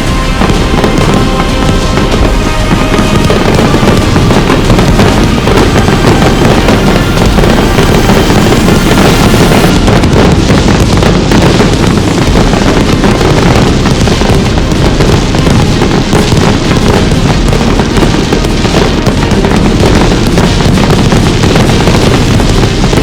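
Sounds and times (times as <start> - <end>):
fireworks bangs and crackles: 0.0 - 23.0.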